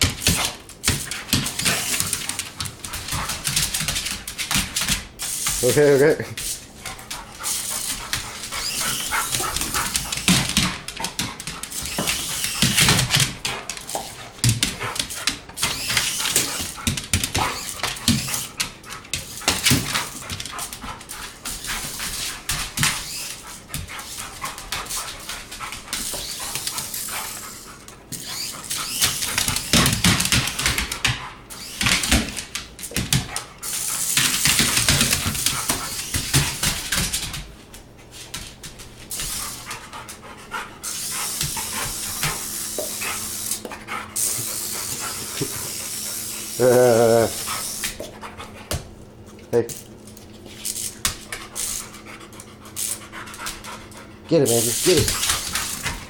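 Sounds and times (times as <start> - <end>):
toy car high-pitched whine: 11.8 - 13.0, 15.6 - 16.8
dog barking and growling: 46.5 - 47.7.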